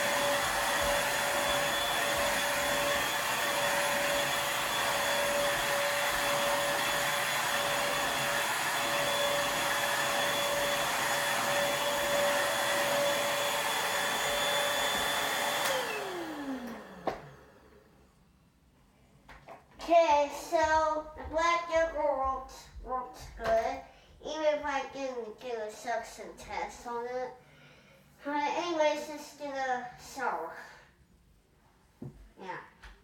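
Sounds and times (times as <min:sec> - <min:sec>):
vacuum cleaner motor whine: 0:00.0 - 0:18.0.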